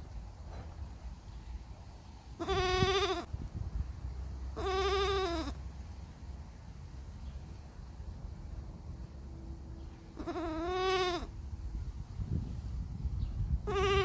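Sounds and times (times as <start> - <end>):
baby goat bleating: 2.4 - 3.3, 4.5 - 5.6, 10.1 - 11.4, 13.6 - 14.0.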